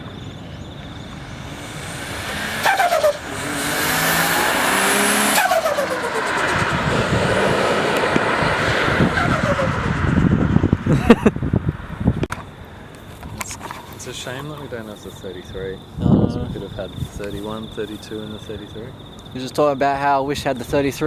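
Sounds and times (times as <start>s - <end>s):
car engine accelerating hard: 0.8s - 12.3s
choppy turbo flutter: 1.3s - 10.9s.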